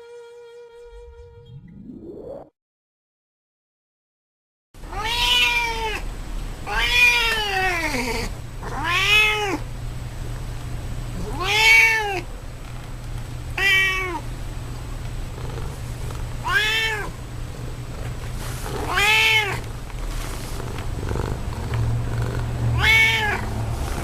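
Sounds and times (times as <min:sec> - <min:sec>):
cat meowing: 0:04.9 - 0:09.6, 0:11.2 - 0:12.3, 0:13.6 - 0:14.3, 0:16.4 - 0:17.2, 0:18.7 - 0:19.8, 0:22.2 - 0:23.6.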